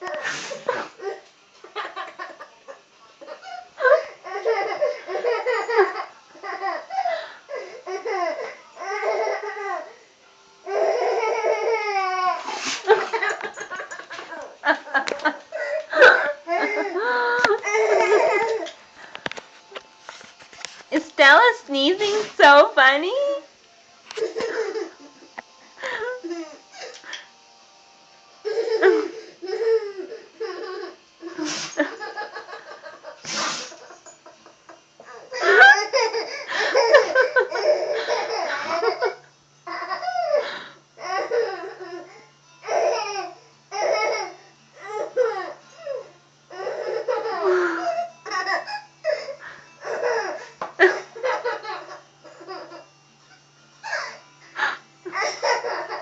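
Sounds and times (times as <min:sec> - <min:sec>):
dog sneezing: 0:00.2 - 0:01.0, 0:12.4 - 0:12.9, 0:31.4 - 0:31.8, 0:33.2 - 0:33.8
baby laughing: 0:35.3 - 0:40.5.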